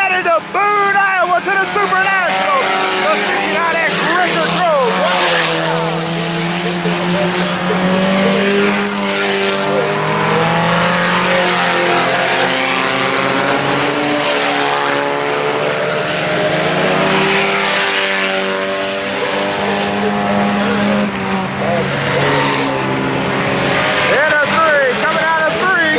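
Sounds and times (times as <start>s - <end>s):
race car engines accelerating: 0.0s - 25.9s.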